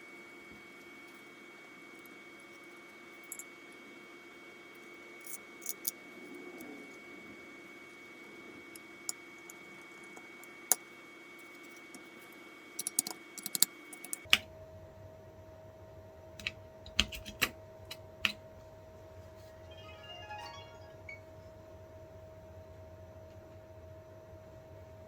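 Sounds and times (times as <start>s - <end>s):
faint steady hum: 0.0s - 25.0s
small parts clicking and tapping: 3.2s - 3.5s, 5.2s - 6.0s, 12.8s - 14.4s.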